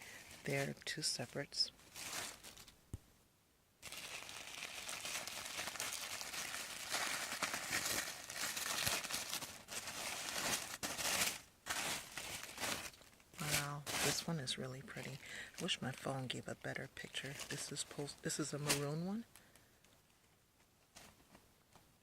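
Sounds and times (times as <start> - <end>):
packaging crinkling: 1.8 - 2.8, 3.8 - 14.3.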